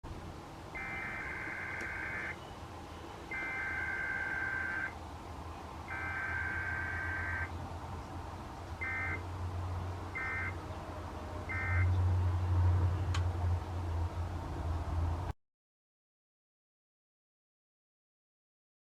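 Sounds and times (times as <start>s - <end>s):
radio hiss: 0.8s - 2.4s, 3.3s - 5.0s
two-tone warbling data bursts: 0.8s - 2.4s, 3.3s - 5.0s, 5.9s - 7.5s, 8.8s - 9.2s, 10.2s - 10.6s, 11.5s - 11.9s.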